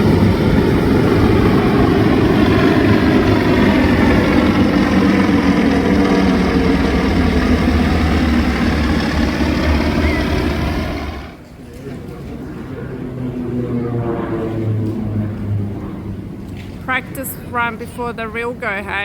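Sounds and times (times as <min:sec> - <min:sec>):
aircraft flying overhead: 0:00.0 - 0:19.0.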